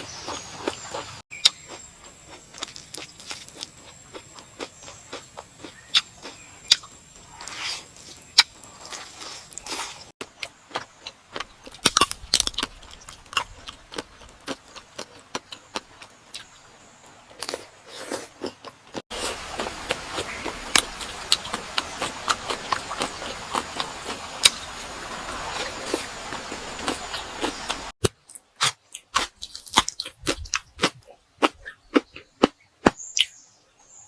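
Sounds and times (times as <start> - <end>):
crunching and chewing food: 0.0 - 16.5, 17.1 - 33.3
steady hiss: 19.1 - 27.9.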